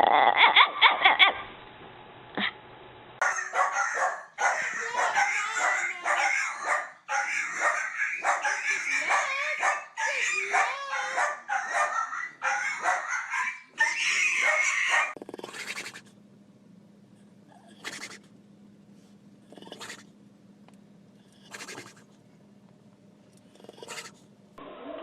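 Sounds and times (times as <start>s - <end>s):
low steady hum: 1.4s - 24.9s
dog yowling: 3.2s - 16.0s.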